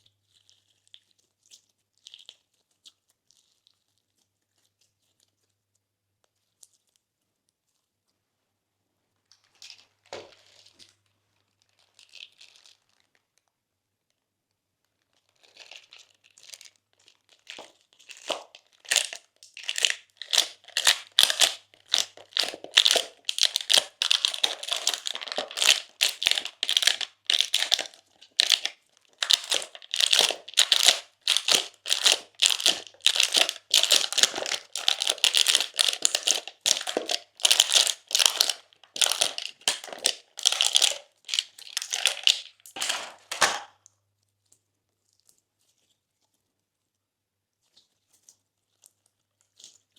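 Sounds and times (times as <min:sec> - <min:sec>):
slime squished by hand: 0:15.4 - 0:43.8.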